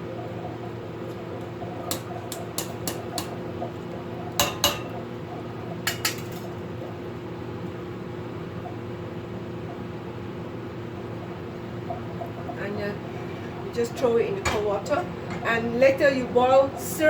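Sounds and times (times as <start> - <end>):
steady hum: 0.0 - 17.0
metal utensil clinking on pot: 1.9 - 3.4, 4.4 - 5.0, 5.8 - 6.5.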